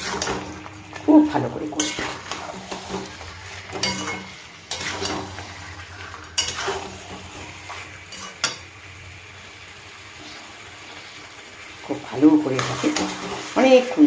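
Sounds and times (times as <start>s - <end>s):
utensil scraping a pan: 0.0s - 0.6s, 1.7s - 8.6s
food frying: 0.0s - 14.0s.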